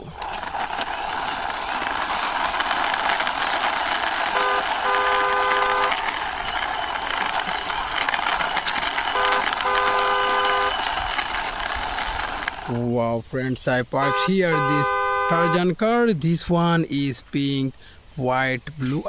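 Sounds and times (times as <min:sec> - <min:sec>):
toy truck wheels rolling: 0:00.0 - 0:15.7
two-tone toy horn honking: 0:04.3 - 0:07.7, 0:08.7 - 0:11.2, 0:14.0 - 0:15.7.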